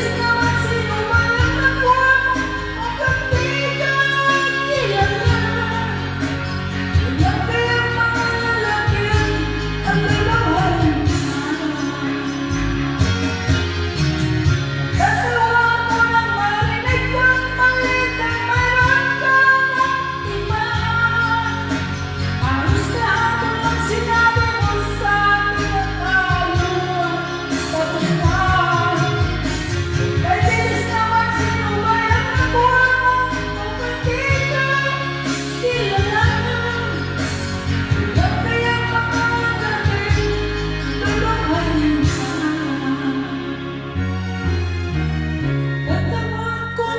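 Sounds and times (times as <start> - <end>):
person singing: 0.0 - 14.0, 14.8 - 44.1
instrumental backing music: 0.0 - 46.9.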